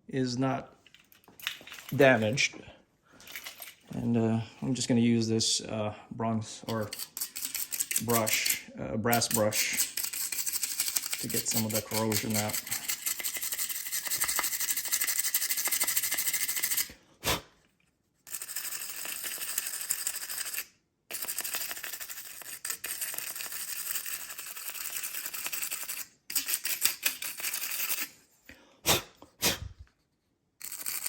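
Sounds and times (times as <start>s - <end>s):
wire brush scrubbing metal: 6.7s - 16.9s.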